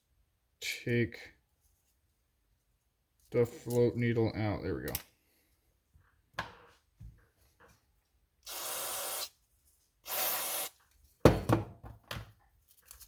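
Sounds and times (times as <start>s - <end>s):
pressurized spray hissing: 8.5s - 9.3s, 10.1s - 10.7s
knock: 11.2s - 12.0s.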